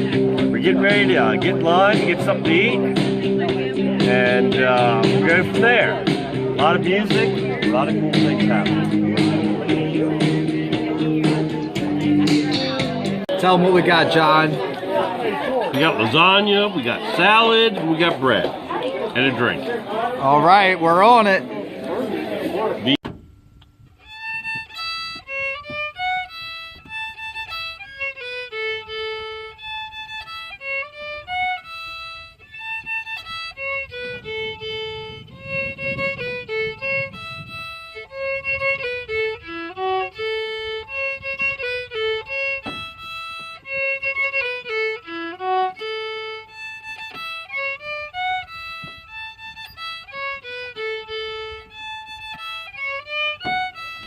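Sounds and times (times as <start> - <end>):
solo fiddle playing: 0.0 - 21.4, 24.0 - 54.0.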